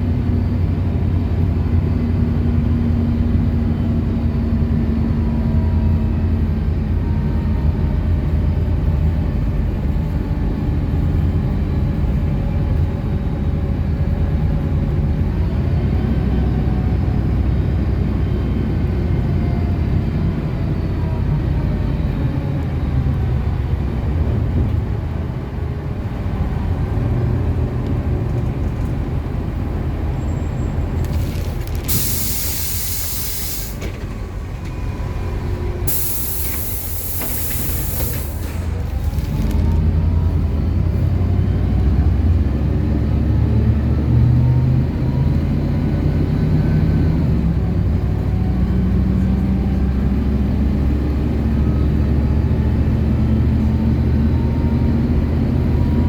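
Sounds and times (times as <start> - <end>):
bus engine running: 0.0 - 56.0
compressed air hissing: 31.9 - 33.9, 35.9 - 38.7.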